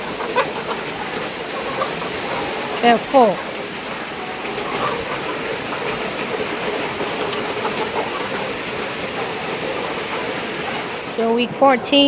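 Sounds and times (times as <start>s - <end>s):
chicks calling: 0.0s - 12.0s.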